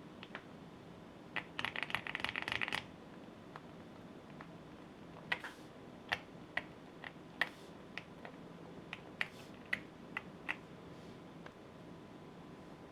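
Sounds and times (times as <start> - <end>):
mechanical keyboard keystrokes: 1.4 - 2.9.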